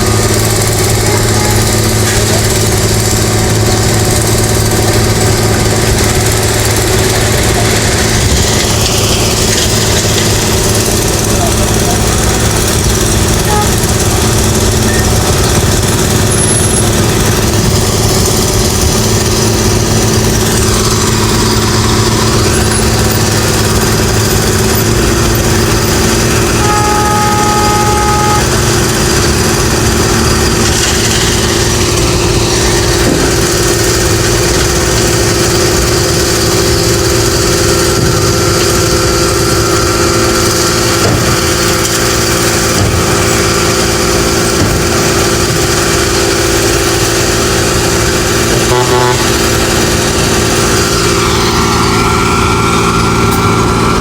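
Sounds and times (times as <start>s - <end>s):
construction machinery and traffic drone: 0.0s - 54.0s
two-note tone: 13.4s - 14.1s, 20.6s - 29.0s.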